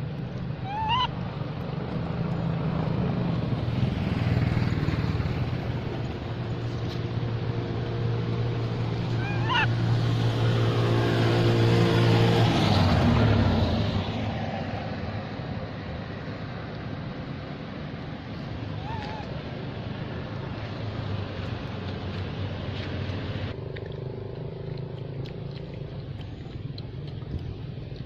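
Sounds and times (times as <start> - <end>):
vehicle engine humming: 0.0 - 28.0
high squeaky calls: 0.6 - 1.2, 9.1 - 9.8, 18.7 - 19.4.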